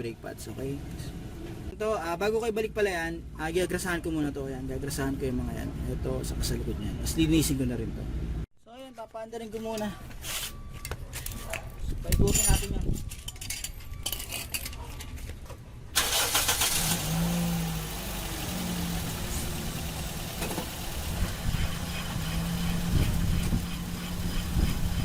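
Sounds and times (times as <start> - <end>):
engine running with low hum: 15.8 - 25.0
car engine cranking and starting: 16.0 - 25.0.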